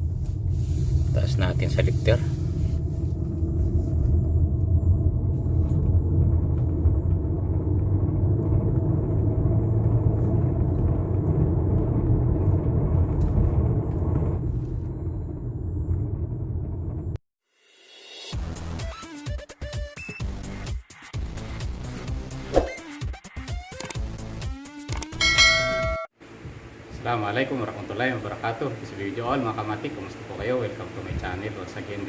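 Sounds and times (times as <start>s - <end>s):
under-chassis grinding: 0.0s - 17.1s
vehicle interior rumble: 0.0s - 17.2s.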